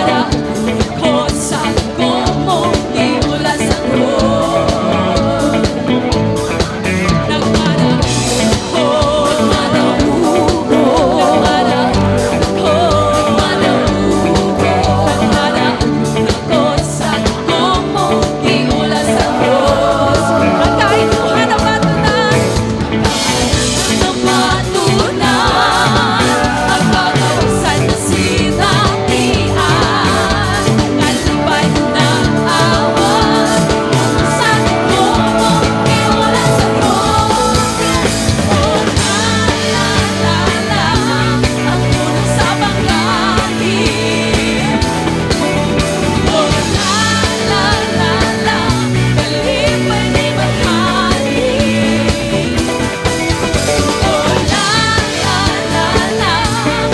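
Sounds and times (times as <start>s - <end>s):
person singing: 0.0s - 56.9s
rock band playing: 0.0s - 56.9s
drum beat: 18.2s - 56.9s.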